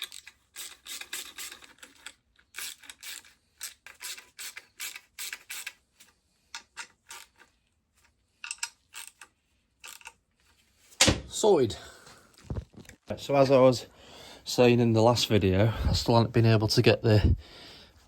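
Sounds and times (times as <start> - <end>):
ratchet wrench clicking: 0.0 - 5.8.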